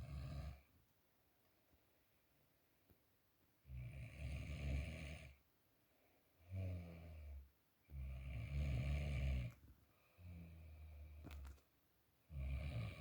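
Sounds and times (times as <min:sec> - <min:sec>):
man snoring: 0:00.0 - 0:00.6, 0:03.7 - 0:05.4, 0:08.0 - 0:09.6, 0:12.3 - 0:13.0.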